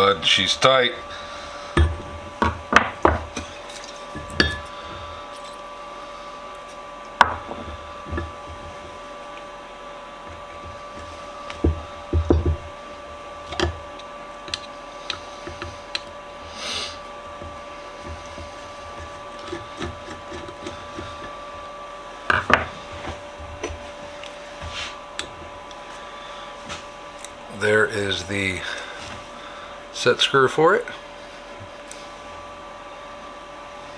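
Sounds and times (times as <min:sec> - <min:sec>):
steady background hum: 0:00.0 - 0:33.9
hand tools clicking and knocking: 0:01.7 - 0:03.5, 0:07.2 - 0:09.0, 0:10.3 - 0:12.8, 0:17.3 - 0:21.4, 0:22.3 - 0:23.9.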